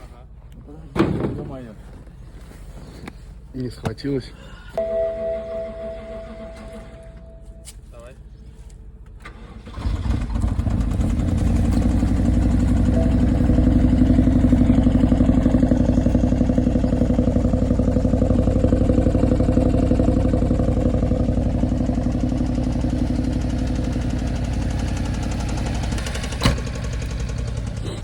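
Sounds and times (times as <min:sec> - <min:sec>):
car engine idling with rapid knock: 0:10.2 - 0:28.0.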